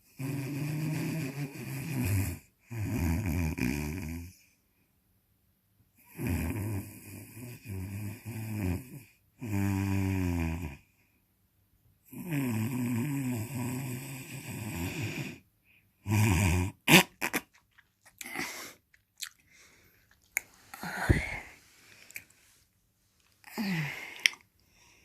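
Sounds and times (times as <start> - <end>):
loud snoring: 0.0 - 4.4, 6.0 - 10.9, 12.1 - 15.4, 16.0 - 17.2.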